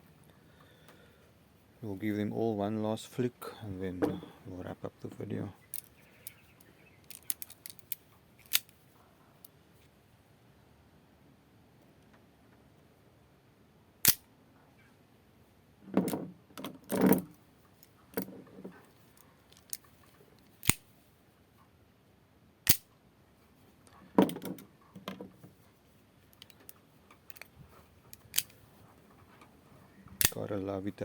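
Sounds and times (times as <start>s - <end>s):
knives knocking and rattling: 5.7s - 6.4s, 7.0s - 8.7s, 19.5s - 20.8s
switchblade snapping open: 14.0s - 14.2s, 20.6s - 20.8s, 28.2s - 28.5s.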